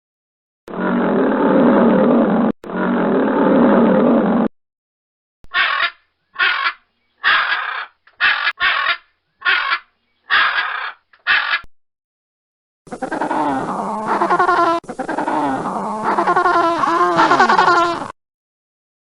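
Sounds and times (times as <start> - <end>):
animal giving harsh calls: 5.5 - 11.7, 12.9 - 18.1.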